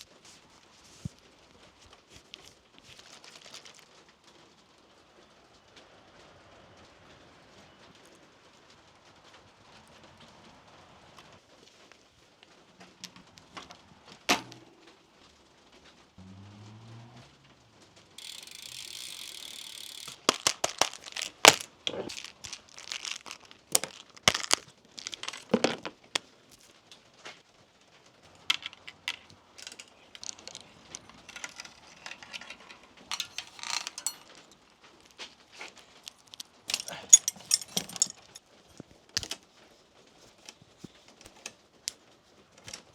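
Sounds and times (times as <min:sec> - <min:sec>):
bicycle chain clicking and rattling: 0:18.2 - 0:25.9, 0:28.3 - 0:34.9, 0:35.9 - 0:38.4
metallic clatters: 0:19.5 - 0:25.9, 0:28.5 - 0:35.0, 0:36.0 - 0:39.4.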